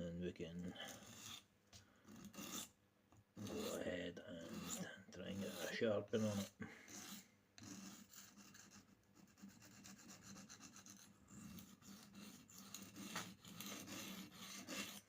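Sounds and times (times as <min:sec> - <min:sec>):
knife blade rasping on sharpening stone: 0:02.2 - 0:02.7, 0:11.6 - 0:15.0.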